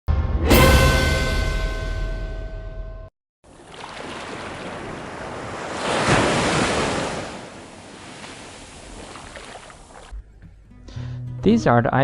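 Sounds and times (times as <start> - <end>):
surf washing against rocks: 3.5 - 10.1.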